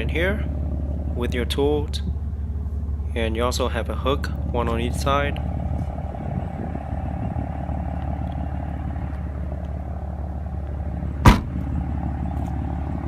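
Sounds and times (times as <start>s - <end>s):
low hum: 0.0s - 13.0s
sharp knock: 11.3s - 11.6s.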